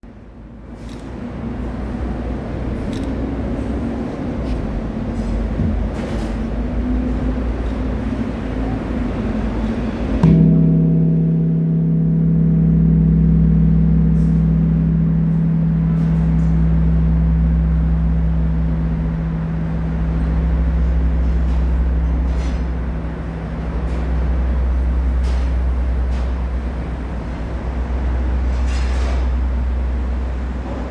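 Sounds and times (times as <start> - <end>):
large bronze bell humming: 9.6 - 30.9.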